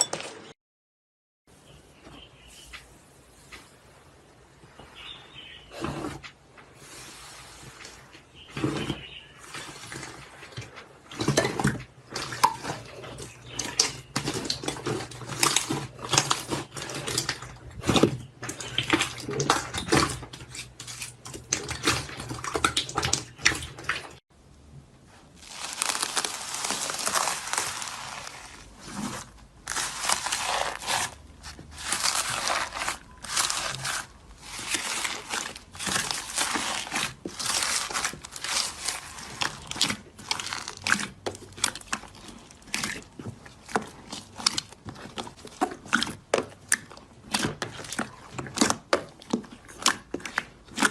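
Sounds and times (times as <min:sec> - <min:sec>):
slime squished by hand: 0:25.4 - 0:50.9.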